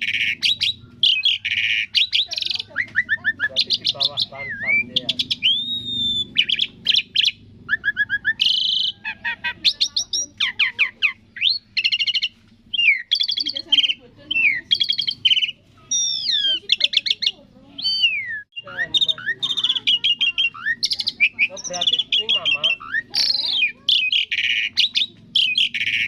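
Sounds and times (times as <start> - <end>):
starling singing chirps and trills: 0.0 - 26.0.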